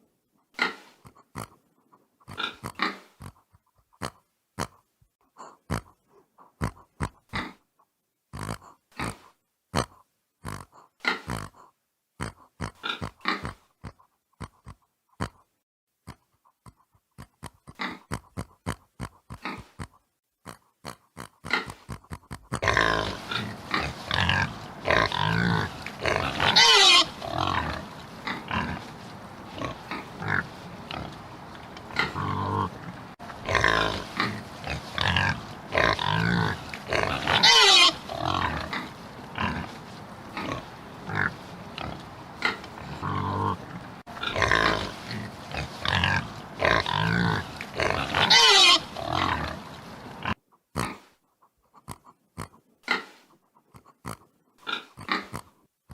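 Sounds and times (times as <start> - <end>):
pig grunting: 0.6 - 1.6, 2.2 - 4.8, 5.4 - 7.7, 8.3 - 16.2, 17.2 - 51.1, 51.8 - 53.1, 53.7 - 55.6
pig loud high calls: 21.2 - 31.2, 31.9 - 39.8, 40.4 - 51.0.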